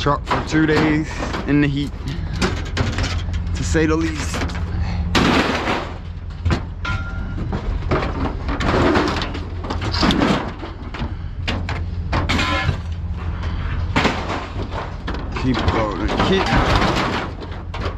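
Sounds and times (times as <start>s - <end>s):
low engine hum: 0.0s - 17.9s
steel shelving sliding and clanking: 0.0s - 17.9s.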